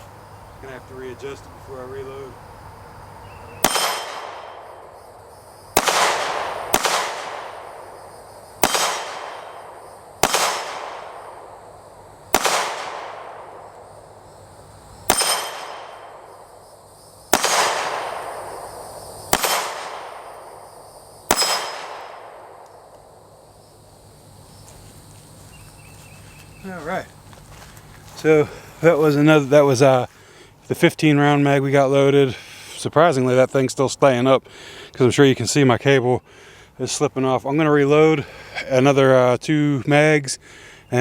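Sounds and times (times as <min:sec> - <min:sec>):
pistol shots echoing: 0:03.6 - 0:11.7, 0:12.3 - 0:14.0, 0:15.1 - 0:16.6, 0:17.3 - 0:23.0.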